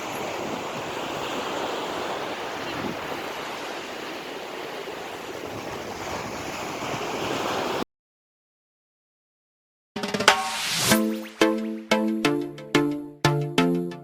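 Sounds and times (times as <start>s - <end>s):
waves washing: 0.0s - 7.8s.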